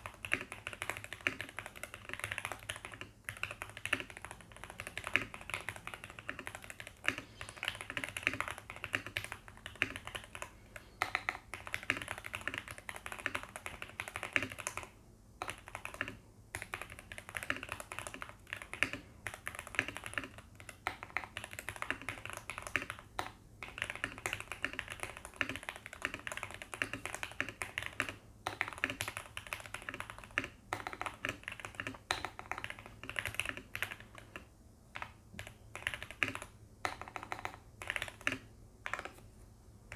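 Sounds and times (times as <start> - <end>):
mechanical keyboard typing: 0.0 - 39.2.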